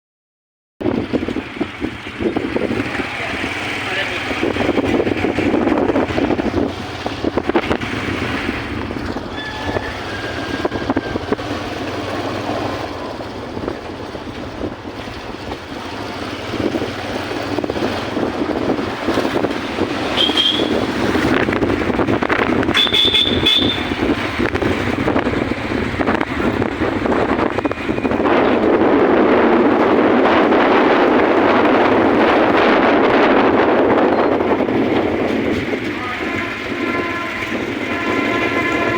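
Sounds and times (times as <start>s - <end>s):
vehicle rumble: 0.8s - 38.9s
wind on microphone: 0.8s - 38.9s
short high squeals: 9.3s - 11.4s.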